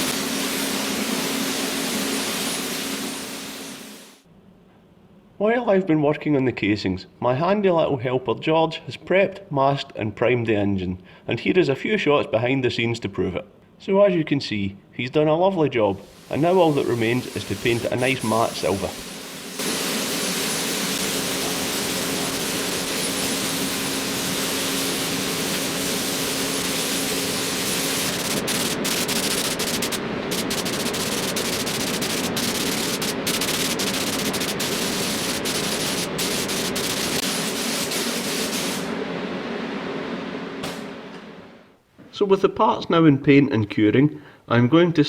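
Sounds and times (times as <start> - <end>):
paint spray hiss: 0.0 - 4.2, 16.0 - 38.9.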